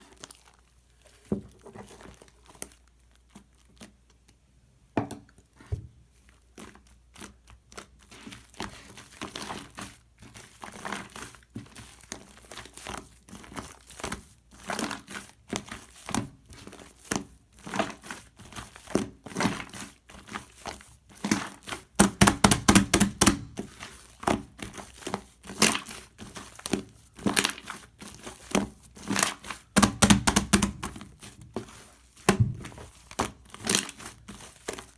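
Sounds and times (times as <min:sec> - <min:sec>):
slime crackling and popping: 0:20.4 - 0:31.2, 0:32.2 - 0:34.9.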